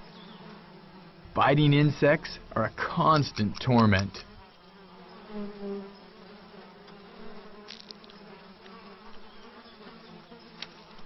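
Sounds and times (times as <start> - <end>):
insects buzzing: 0.0 - 11.0
faint ticks: 7.6 - 9.3, 10.4 - 11.0.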